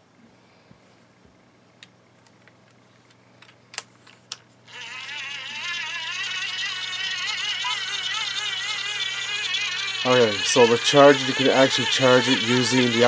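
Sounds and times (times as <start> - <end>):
hand-crank dynamo whirring: 4.7 - 13.0.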